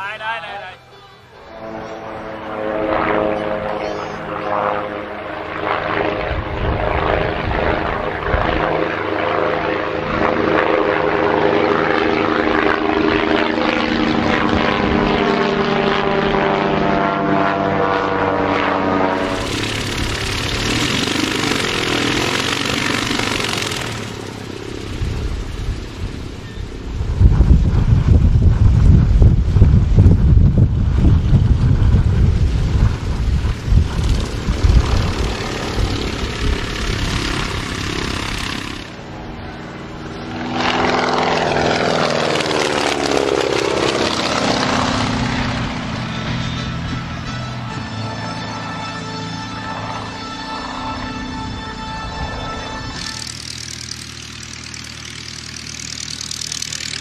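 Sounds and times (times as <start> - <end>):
propeller aircraft engine running: 0.0 - 57.0
wind rumble on microphone: 6.2 - 8.8, 24.9 - 38.8
loud rushing noise: 19.2 - 39.0.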